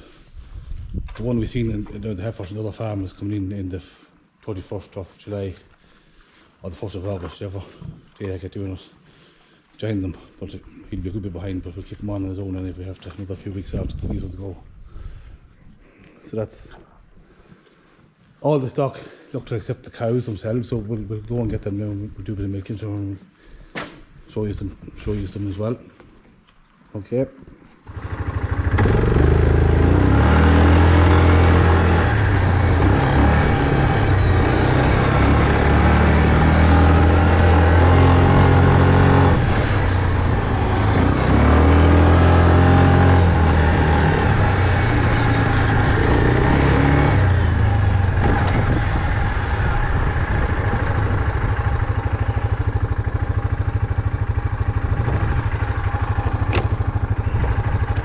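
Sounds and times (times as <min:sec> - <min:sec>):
farm vehicle engine running: 0:27.9 - 0:58.0.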